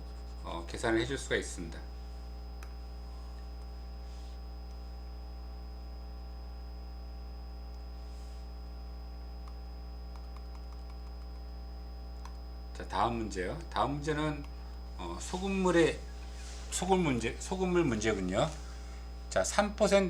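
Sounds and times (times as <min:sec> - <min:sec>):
electrical mains hum: 0:00.0 - 0:20.0
faint clicks: 0:09.4 - 0:11.5.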